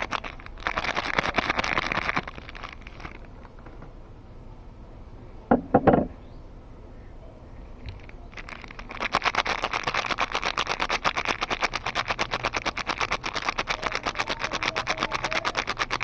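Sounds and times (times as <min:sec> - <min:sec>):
soap packaging crackling: 0:00.0 - 0:03.5, 0:07.9 - 0:16.0.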